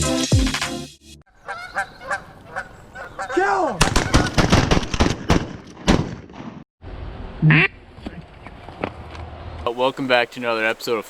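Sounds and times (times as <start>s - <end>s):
duck quacking: 1.3s - 3.5s, 7.4s - 7.8s
shotguns firing: 3.8s - 6.5s.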